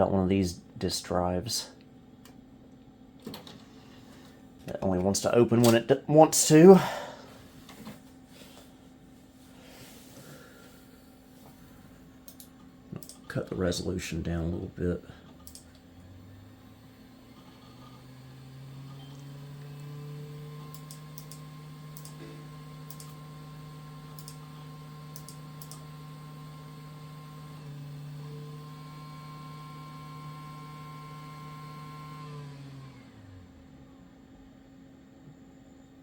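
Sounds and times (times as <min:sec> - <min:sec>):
disc drive spinning and whining: 0:15.2 - 0:34.1.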